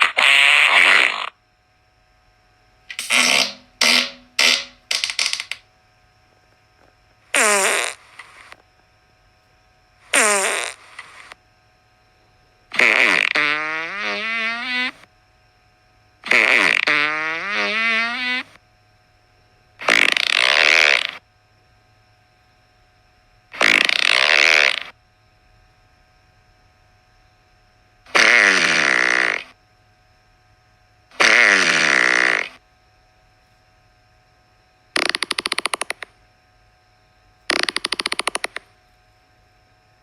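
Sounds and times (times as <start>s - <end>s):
fart sounds: 0.0s - 1.4s, 2.9s - 5.6s, 7.3s - 8.6s, 10.0s - 11.4s, 12.7s - 15.1s, 16.2s - 18.6s, 19.8s - 21.2s, 23.6s - 25.0s, 28.1s - 29.6s, 31.1s - 32.6s, 35.0s - 36.1s, 37.5s - 38.7s.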